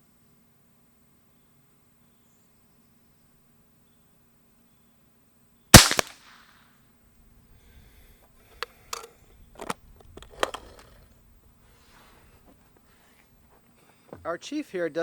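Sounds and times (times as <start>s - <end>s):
sharp clicks: 5.8s - 6.3s
air rifle shot: 5.8s - 6.4s.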